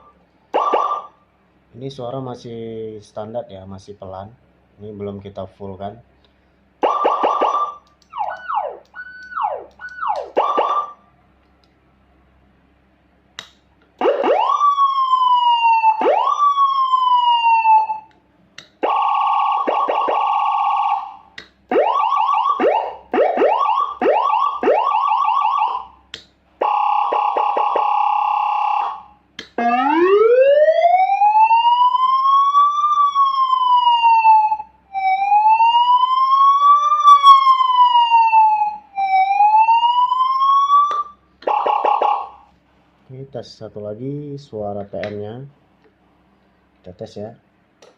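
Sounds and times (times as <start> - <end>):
siren through horn loudspeaker: 14.0 - 18.1, 18.8 - 26.0, 26.6 - 42.5.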